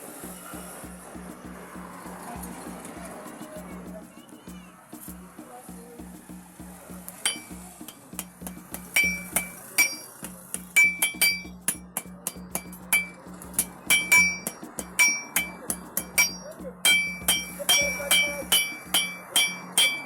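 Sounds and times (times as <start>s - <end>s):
hammer striking metal on anvil: 7.2s - 20.0s.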